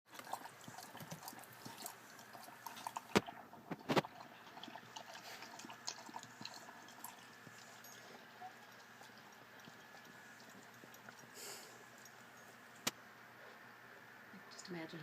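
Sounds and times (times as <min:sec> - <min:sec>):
dog licking with wet clicks: 0:00.1 - 0:03.3.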